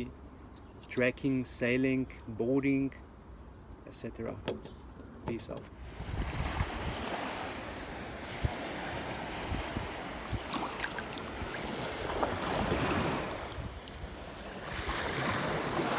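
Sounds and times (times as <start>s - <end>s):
sea waves washing in: 5.8s - 15.9s
wind rumbling on microphone: 5.8s - 15.9s.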